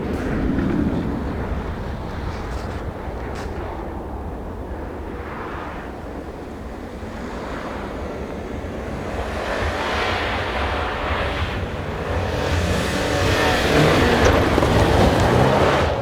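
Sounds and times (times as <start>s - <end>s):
wind rumbling on microphone: 0.0s - 16.0s
rally car engine: 7.8s - 16.0s
tyre noise on snow: 9.5s - 16.0s.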